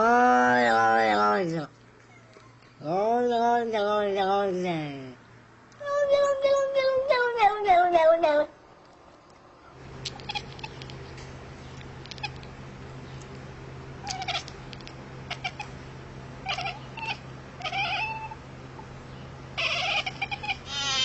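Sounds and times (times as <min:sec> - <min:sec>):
cat meowing: 0:16.4 - 0:18.4, 0:19.6 - 0:21.0.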